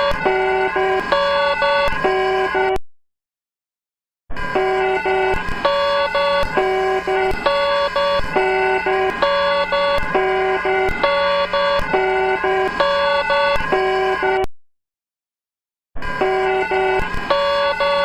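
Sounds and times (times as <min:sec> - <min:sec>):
emergency alert beeps: 0:00.0 - 0:02.8, 0:04.6 - 0:14.4, 0:16.2 - 0:18.0.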